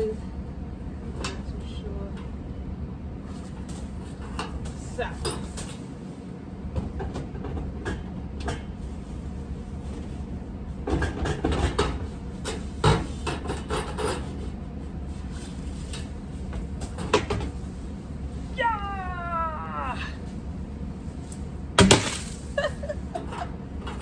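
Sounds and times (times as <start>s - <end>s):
low steady hum: 14.6s - 24.0s.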